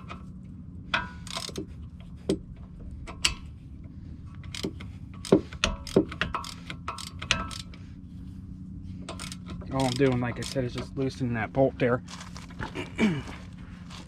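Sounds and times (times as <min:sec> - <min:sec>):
ratchet metallic clicks: 0:00.9 - 0:03.5, 0:04.3 - 0:07.8, 0:09.0 - 0:11.2.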